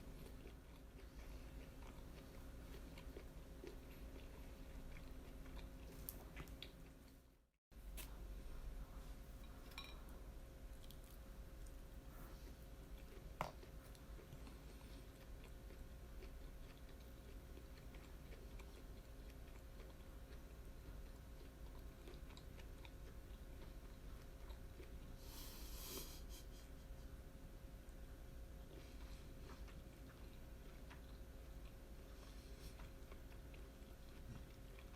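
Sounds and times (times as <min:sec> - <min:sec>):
person chewing wetly: 0:00.0 - 0:07.2, 0:12.6 - 0:25.2, 0:28.6 - 0:34.9.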